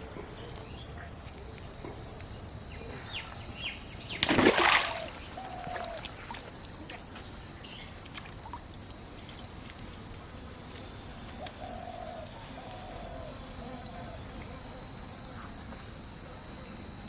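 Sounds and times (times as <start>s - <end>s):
splash in pond water: 4.1s - 7.1s.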